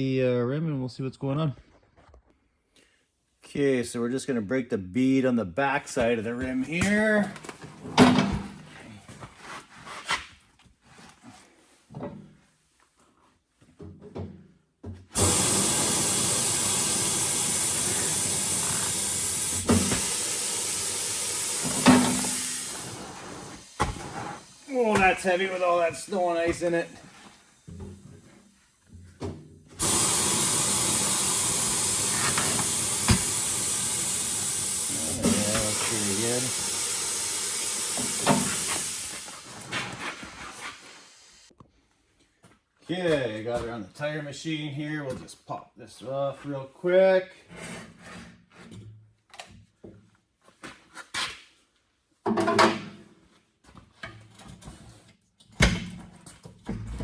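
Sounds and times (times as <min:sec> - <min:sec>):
compressed air hissing: 0:15.2 - 0:27.2, 0:29.8 - 0:41.5.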